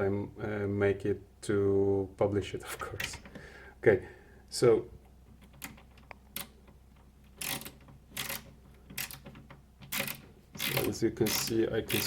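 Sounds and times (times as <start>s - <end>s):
ratcheting bit holder clicking: 7.3s - 12.0s.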